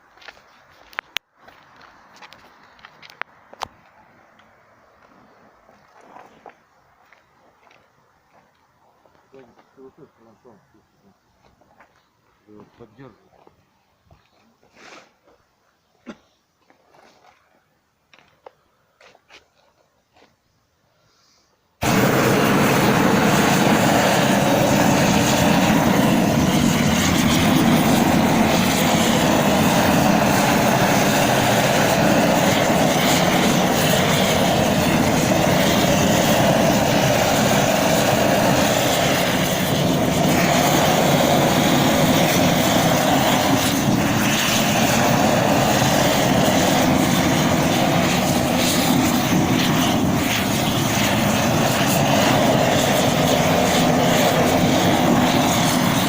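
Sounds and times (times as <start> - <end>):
roofing torch flame roaring: 21.8 - 56.0.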